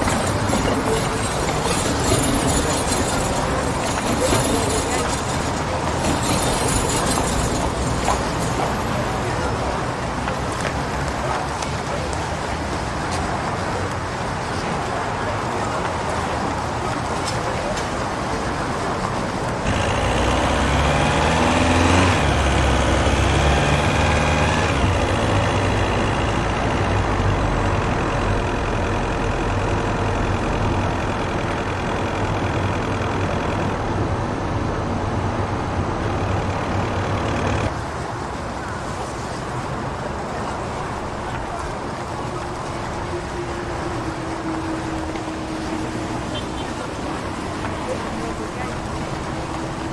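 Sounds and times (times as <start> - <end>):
motor traffic: 0.0 - 49.9
vehicle engine revving: 19.6 - 37.7.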